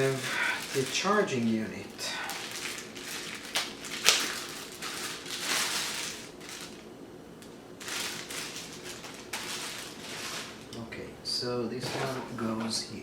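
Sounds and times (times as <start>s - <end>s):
packaging rustling and crinkling: 0.0s - 6.9s, 7.8s - 10.8s.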